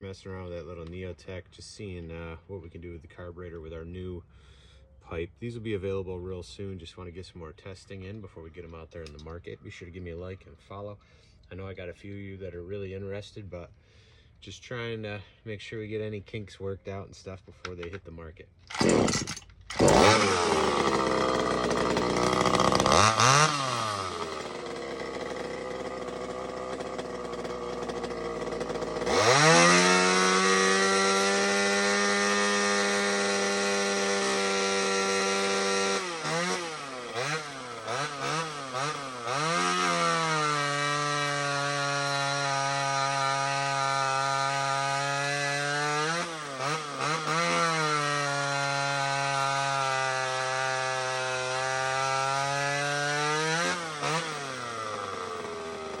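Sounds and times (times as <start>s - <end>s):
chainsaw engine revving: 18.7s - 56.0s.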